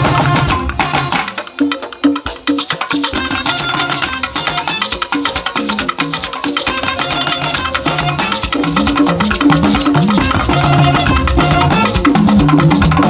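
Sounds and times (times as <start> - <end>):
hand drums: 0.0 - 13.0
latin band music: 0.0 - 13.0
shaker: 0.0 - 13.0
bass line: 10.2 - 12.1.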